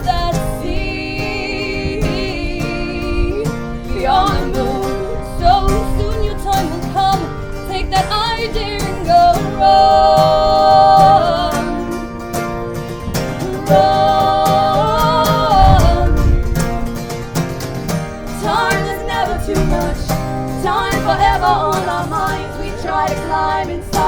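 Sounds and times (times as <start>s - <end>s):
long bending sung notes: 0.0s - 16.6s
guitars strumming: 0.0s - 24.0s.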